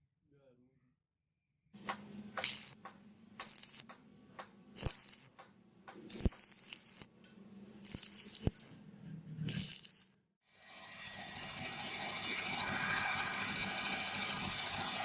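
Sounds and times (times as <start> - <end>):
metal parts clinking and scraping: 2.4 - 2.8, 3.4 - 4.0, 4.8 - 5.4, 6.1 - 7.1, 7.8 - 8.7, 9.4 - 10.2.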